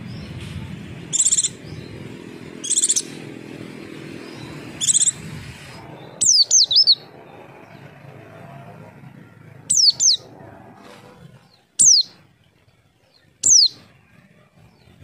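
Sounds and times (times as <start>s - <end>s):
bird trilled chirps: 1.1s - 2.0s, 2.6s - 3.2s, 4.4s - 5.3s, 6.0s - 7.1s, 9.7s - 10.3s, 11.8s - 12.2s, 13.2s - 13.9s.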